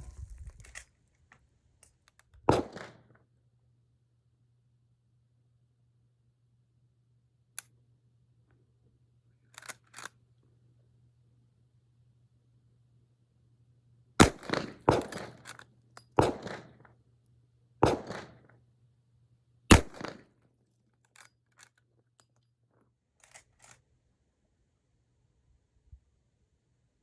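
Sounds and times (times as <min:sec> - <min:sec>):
rifle shots echoing: 0:02.5 - 0:03.0, 0:14.2 - 0:15.4, 0:16.2 - 0:16.6, 0:17.8 - 0:18.4, 0:19.7 - 0:20.2.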